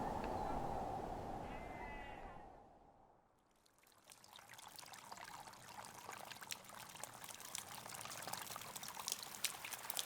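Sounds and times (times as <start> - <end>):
meltwater trickling and dripping: 3.5 - 10.0.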